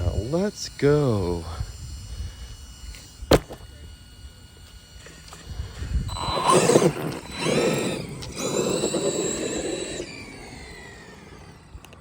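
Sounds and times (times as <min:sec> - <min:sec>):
rc truck motor whine: 0:00.0 - 0:12.0
tyre noise: 0:03.3 - 0:03.6.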